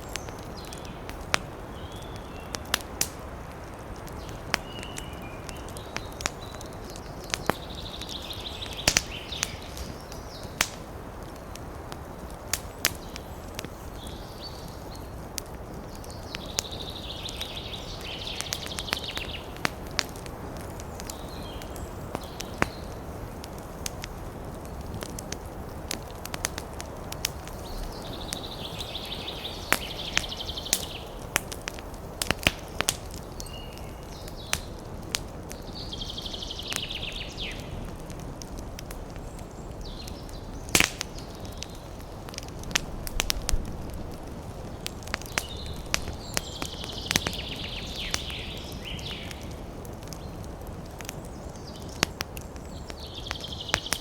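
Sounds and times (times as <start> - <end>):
campfire crackling and popping: 0.0 - 54.0.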